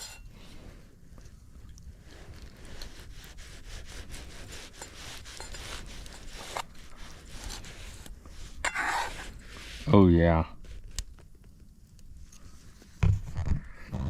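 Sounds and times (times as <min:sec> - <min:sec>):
knife sawing through steak: 0:02.6 - 0:09.9.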